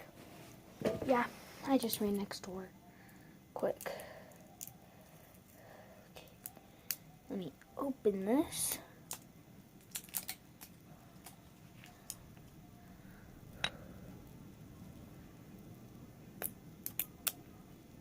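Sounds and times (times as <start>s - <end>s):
plastic package clicking and snapping: 9.1s - 12.2s, 16.4s - 17.4s.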